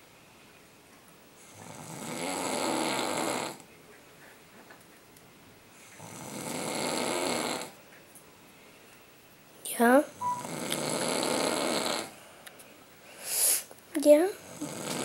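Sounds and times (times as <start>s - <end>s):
man snoring: 1.4s - 3.6s, 6.0s - 7.8s, 10.4s - 12.2s, 14.4s - 15.0s.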